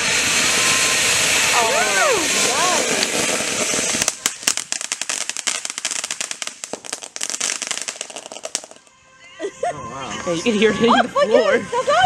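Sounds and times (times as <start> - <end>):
firework crackling: 0.0 - 9.0.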